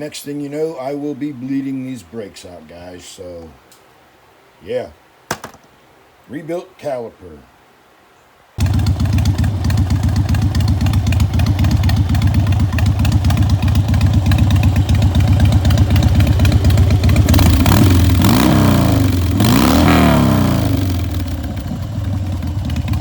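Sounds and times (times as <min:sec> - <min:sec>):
motorcycle engine rumbling and revving: 0:08.6 - 0:23.0.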